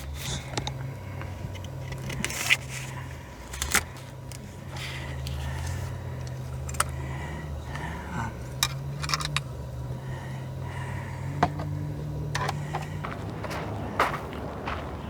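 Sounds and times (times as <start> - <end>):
low hum: 0.0 - 15.0
fishing reels clicking and clinking: 1.5 - 10.0.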